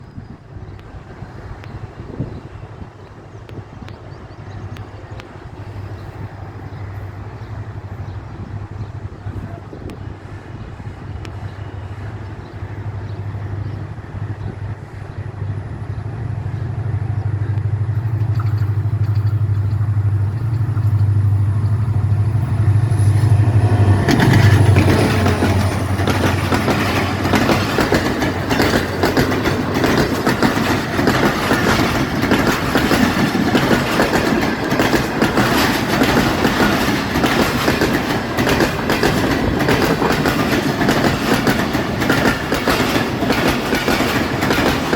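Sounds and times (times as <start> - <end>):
train wheels clattering over rails: 0.9 - 44.9
locomotive engine drone: 4.1 - 44.9.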